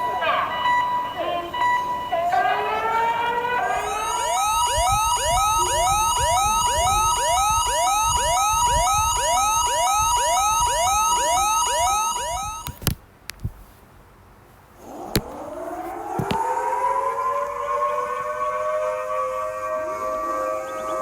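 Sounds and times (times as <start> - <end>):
emergency siren rising whoops: 0.0 - 12.7, 14.8 - 21.0
clicks: 4.1 - 13.7, 14.8 - 16.5.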